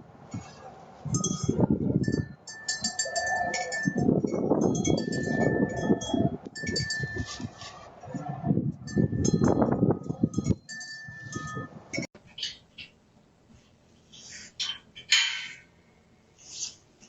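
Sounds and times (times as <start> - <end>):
metallic chiming and clinking: 1.1 - 7.4, 8.9 - 12.1.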